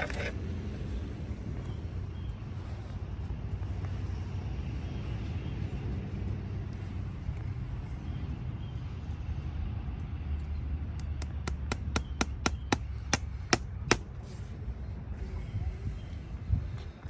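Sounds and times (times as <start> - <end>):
hammer tapping metal: 11.0 - 14.0.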